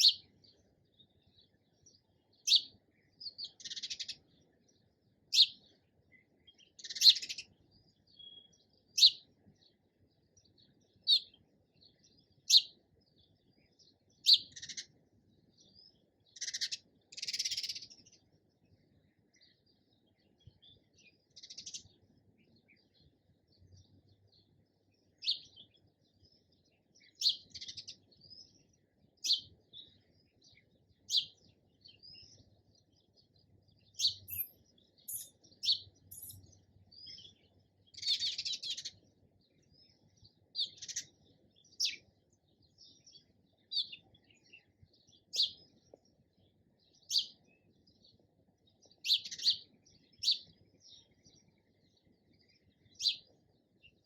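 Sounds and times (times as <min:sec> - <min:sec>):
sparrow chirping: 0:00.0 - 0:54.0.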